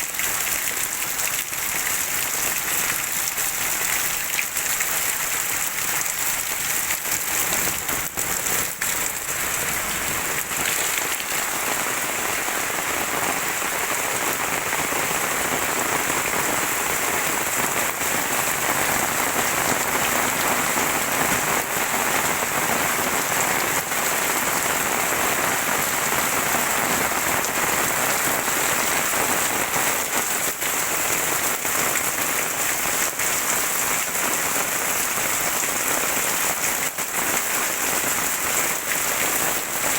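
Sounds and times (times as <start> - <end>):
heavy rain pouring: 0.0 - 39.9
sharp raindrop impacts: 4.1 - 12.4.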